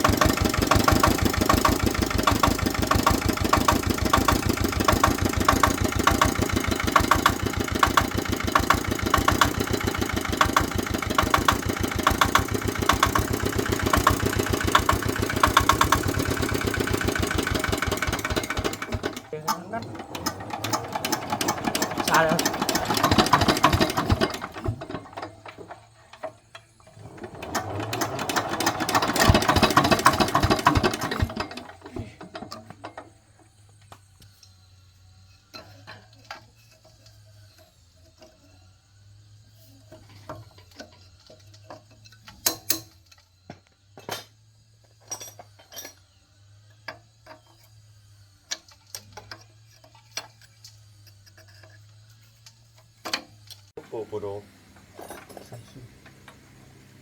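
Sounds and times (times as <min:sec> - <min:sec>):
diesel engine running: 0:00.0 - 0:25.9, 0:53.8 - 0:57.0.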